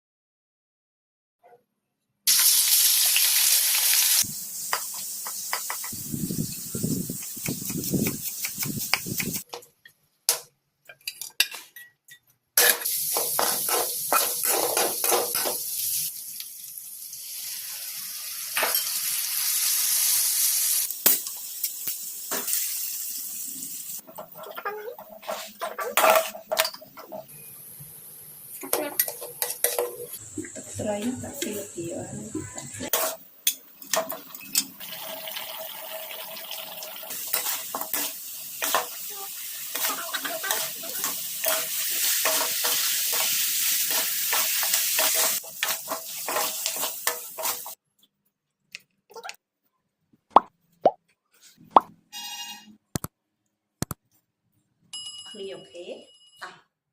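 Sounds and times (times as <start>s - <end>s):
food sizzling in a pan: 2.3s - 9.5s, 12.6s - 26.4s, 27.2s - 47.8s
utensils scraping cookware: 24.1s - 27.4s.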